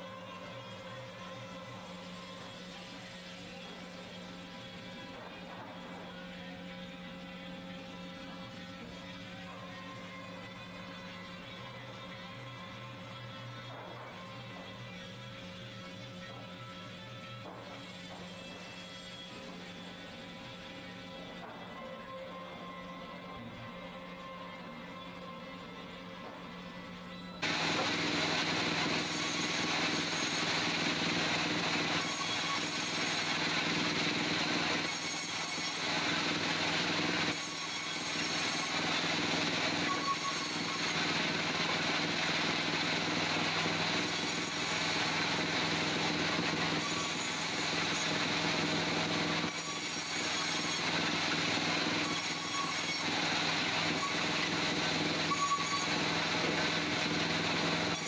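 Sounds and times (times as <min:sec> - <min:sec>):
band saw cutting log: 0:27.4 - 0:58.0.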